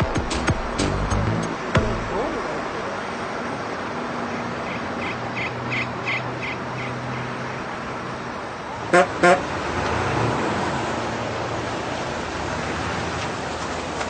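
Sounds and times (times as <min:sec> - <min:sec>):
engine running: 0:00.0 - 0:14.0
vehicle horn toots: 0:08.9 - 0:09.5.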